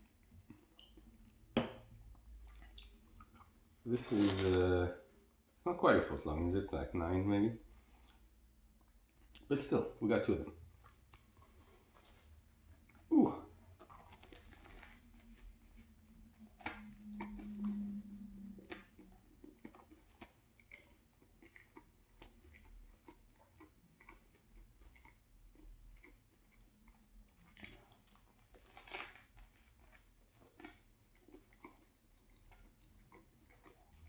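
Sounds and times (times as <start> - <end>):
wet chewing mouth clicks: 0.0 - 3.6, 13.8 - 28.9
low steady hum: 0.0 - 21.5
loud crunches: 3.9 - 4.8.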